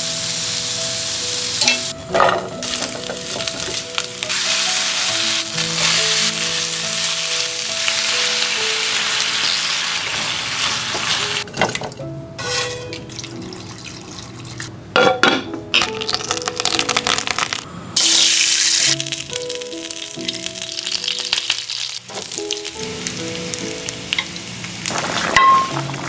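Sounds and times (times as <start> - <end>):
food sizzling in a pan: 0.0 - 2.0, 2.6 - 11.5, 18.0 - 26.0
background music: 0.0 - 26.0.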